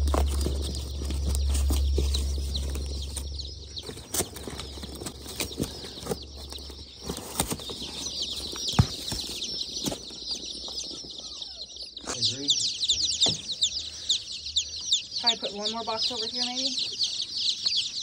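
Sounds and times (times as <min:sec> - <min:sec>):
low hum: 0:00.0 - 0:10.5
chicks peeping: 0:00.0 - 0:18.0.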